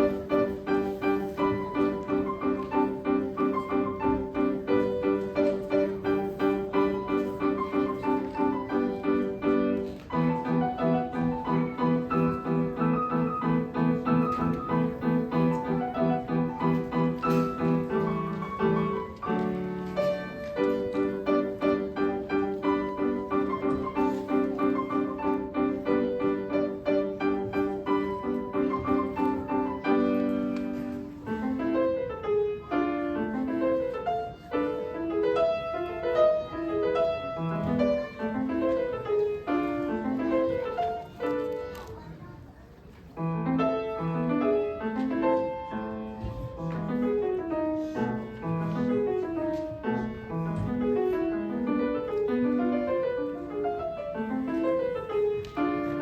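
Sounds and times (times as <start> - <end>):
solo classical piano: 0.0 - 56.0.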